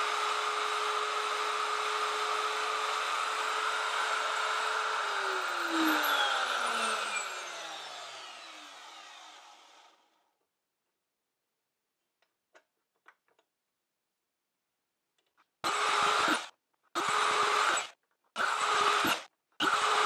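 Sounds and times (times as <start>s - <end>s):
router whine spinning down: 0.0s - 10.2s.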